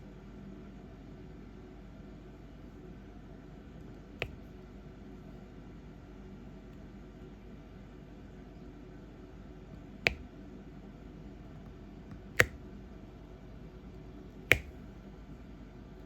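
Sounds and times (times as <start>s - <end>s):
sharp short clicks: 12.4s - 12.6s.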